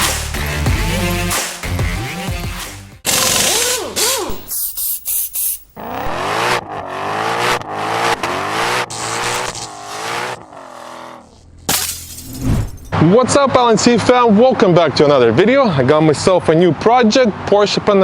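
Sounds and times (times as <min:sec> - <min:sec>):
car engine revving hard: 0:05.8 - 0:11.7.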